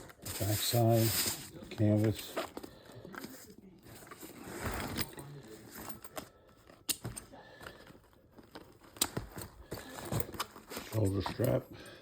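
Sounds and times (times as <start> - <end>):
fabric bag rustling: 0.0 - 6.2.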